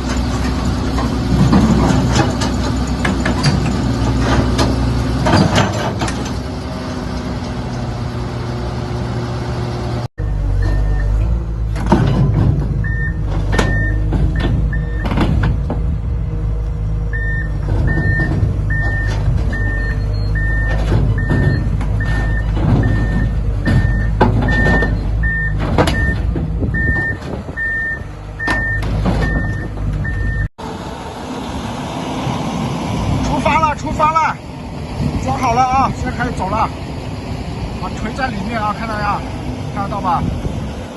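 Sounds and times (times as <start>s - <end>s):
metal clanks and knocks: 0.0s - 6.5s, 10.6s - 16.0s, 17.4s - 27.7s, 28.4s - 30.4s
diesel engine running: 0.0s - 40.9s.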